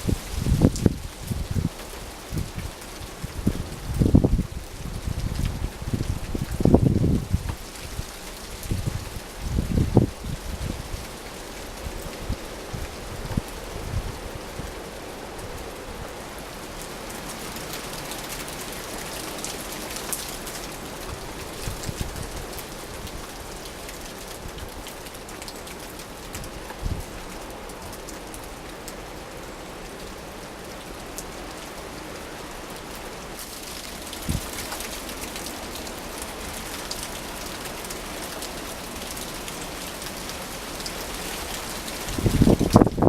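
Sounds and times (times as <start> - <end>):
steady rain falling: 0.0 - 43.0.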